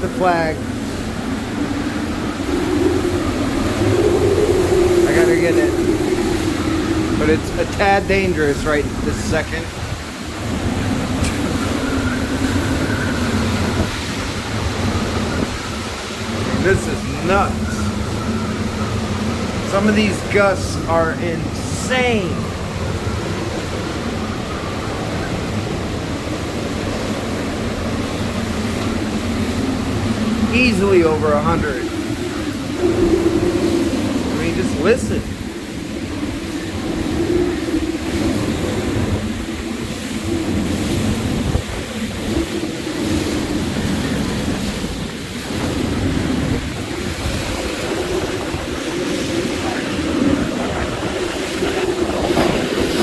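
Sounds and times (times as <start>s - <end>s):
strong wind rushing: 0.0s - 53.0s.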